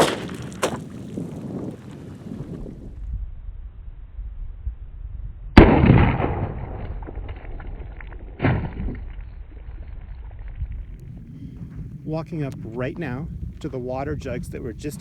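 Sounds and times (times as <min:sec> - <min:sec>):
pistol shot: 0:00.0 - 0:00.8, 0:05.6 - 0:07.4.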